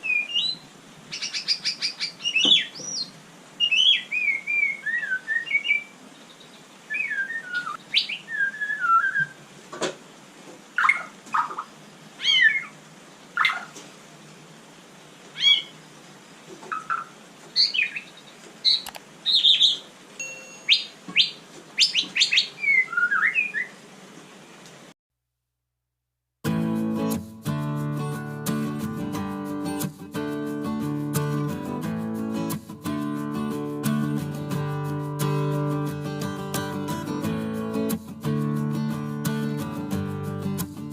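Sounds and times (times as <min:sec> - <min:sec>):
bird singing whistled phrases: 0:00.0 - 0:00.6, 0:01.2 - 0:05.9, 0:06.9 - 0:09.4, 0:15.4 - 0:15.7, 0:16.8 - 0:18.1, 0:18.7 - 0:19.8, 0:20.7 - 0:23.8.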